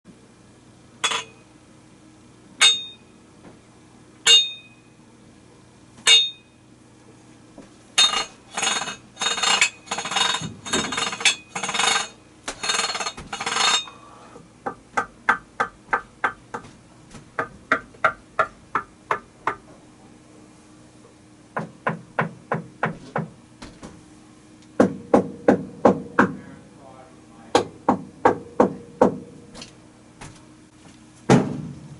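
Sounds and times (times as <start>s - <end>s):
hard knocks and strikes: 14.6s - 19.6s, 24.8s - 26.4s, 27.6s - 29.3s, 31.3s - 31.9s.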